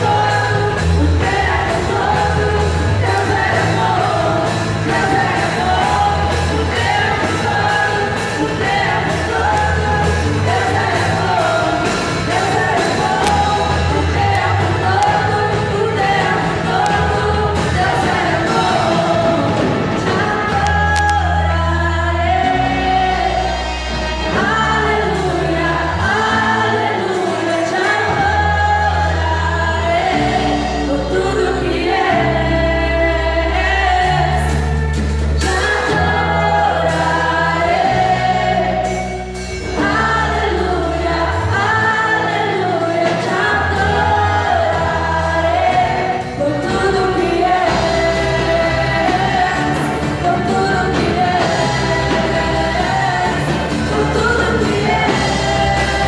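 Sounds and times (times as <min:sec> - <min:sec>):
steady drum beat: 0:00.0 - 0:21.7, 0:34.0 - 0:56.0
bass guitar: 0:00.0 - 0:56.0
singers singing: 0:00.0 - 0:56.0.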